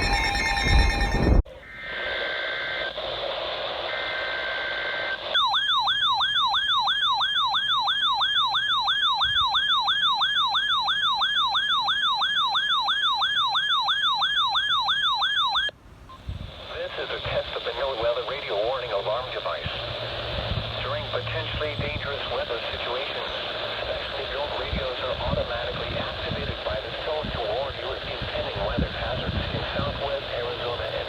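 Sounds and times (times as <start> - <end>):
digital data chirps: 0.0 - 1.4
warbling alarm siren: 0.0 - 2.9, 5.4 - 15.7
radio hiss: 1.5 - 5.4, 16.4 - 31.0.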